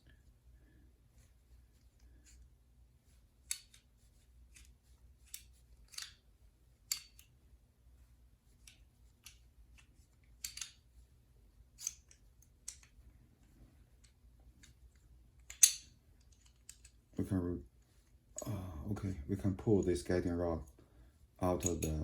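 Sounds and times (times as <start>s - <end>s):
metal pistol parts clinking: 3.5s - 3.8s, 4.5s - 6.2s, 6.8s - 7.4s, 8.6s - 10.9s, 11.7s - 13.0s, 14.0s - 17.0s, 21.4s - 22.0s.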